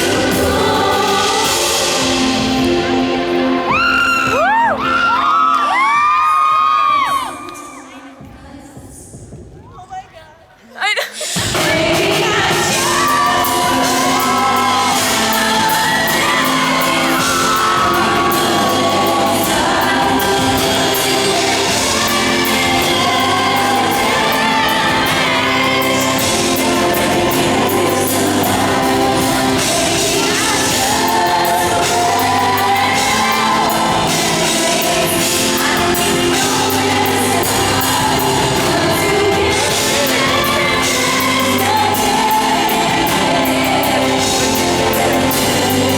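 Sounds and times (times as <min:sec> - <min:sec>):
backing music: 0:00.0 - 0:09.9, 0:11.2 - 0:45.9.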